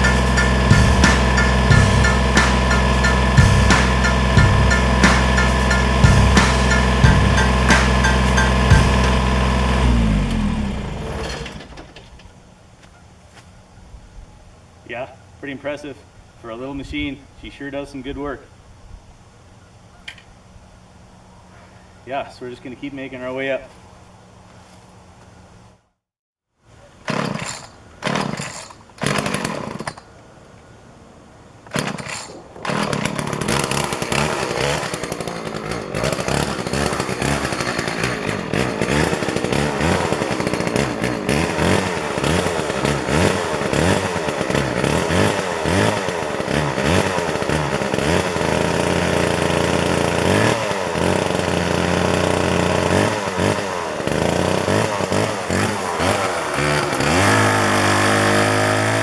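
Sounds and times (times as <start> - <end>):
engine at high revs: 0.0 - 11.6, 32.7 - 59.0.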